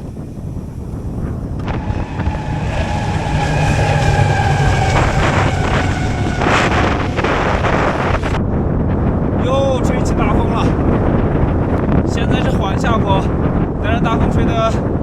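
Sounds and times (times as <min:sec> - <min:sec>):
steady whining tone: 0:00.0 - 0:08.4
wind buffeting microphone: 0:00.0 - 0:15.0.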